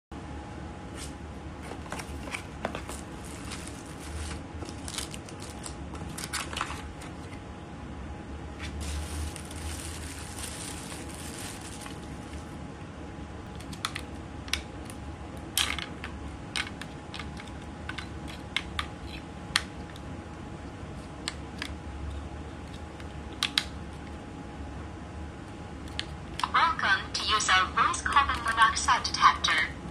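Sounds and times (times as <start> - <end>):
faint steady hum: 0.1 - 29.9
plastic crinkling: 2.0 - 7.3, 8.6 - 12.5
plastic objects clicking and tapping: 15.6 - 18.9.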